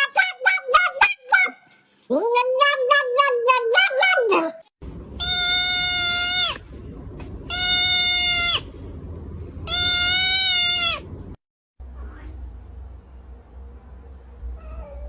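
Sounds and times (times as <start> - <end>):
long animal cries: 5.2 - 6.6, 7.5 - 8.7, 9.7 - 11.1.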